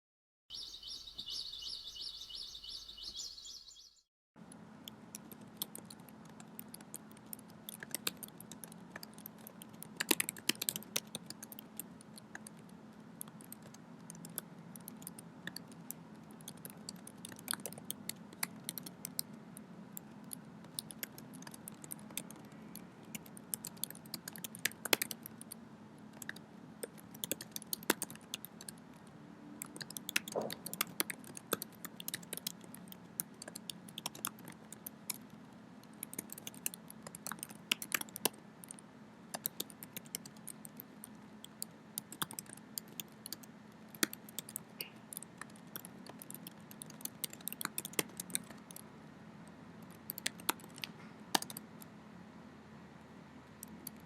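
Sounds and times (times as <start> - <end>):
high-pitched pulsing chirp: 0.5 - 4.1
computer keyboard typing: 4.8 - 48.8, 49.8 - 51.9, 53.6 - 54.0.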